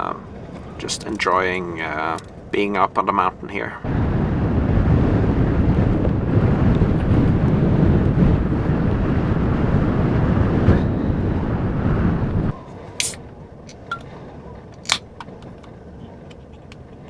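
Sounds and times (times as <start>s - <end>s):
blizzard wind buffeting microphone: 0.0s - 12.6s.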